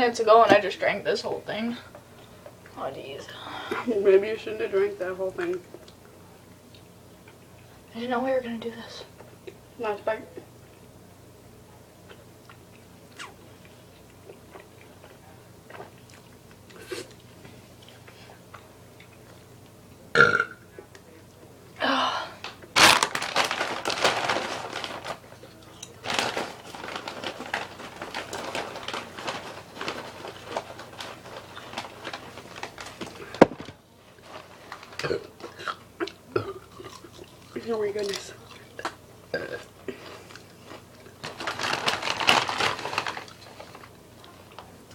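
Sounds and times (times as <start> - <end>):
girl burping: 20.2 - 20.6, 35.0 - 36.7, 39.3 - 39.7.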